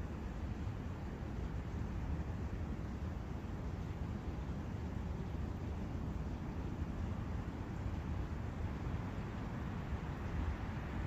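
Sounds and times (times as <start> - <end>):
forest wind noise: 0.0 - 11.0.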